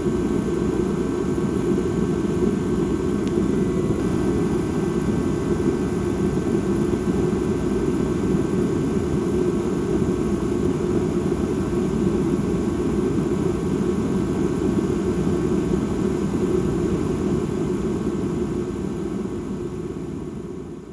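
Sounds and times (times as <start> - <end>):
faint sustained high tones: 3.4 - 4.6.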